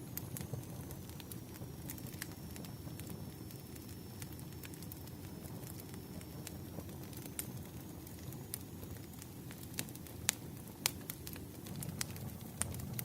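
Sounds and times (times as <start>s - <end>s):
fire crackling with pops: 0.0s - 13.0s.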